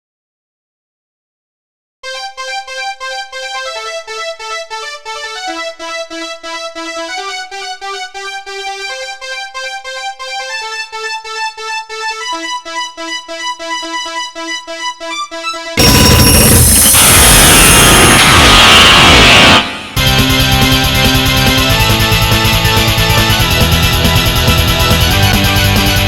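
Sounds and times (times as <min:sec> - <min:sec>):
midi ringtone melody: 0:02.1 - 0:21.6.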